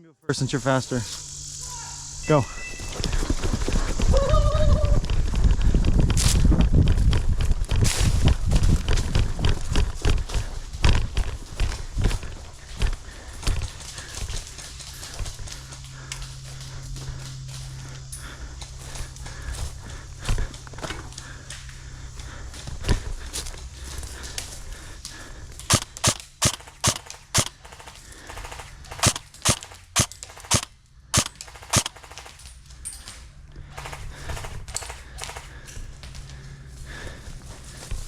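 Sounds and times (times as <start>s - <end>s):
airsoft guns firing: 25.7s - 32.4s, 33.7s - 35.6s.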